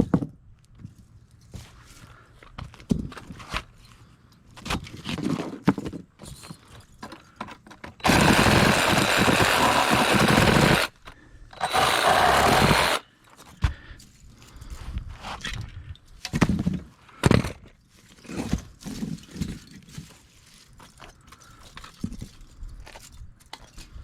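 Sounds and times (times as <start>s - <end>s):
power tool running: 8.0s - 11.0s, 11.6s - 13.0s.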